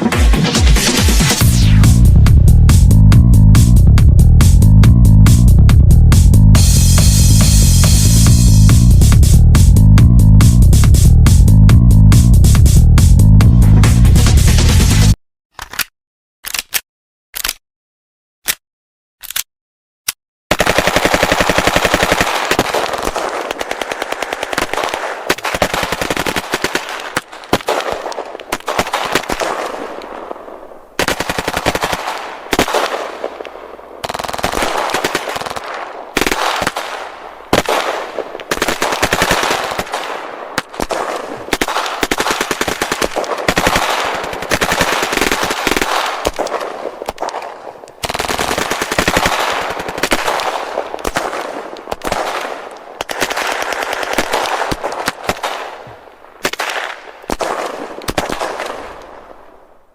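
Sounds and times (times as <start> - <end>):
automatic gunfire: 20.5 - 55.8, 56.4 - 59.2.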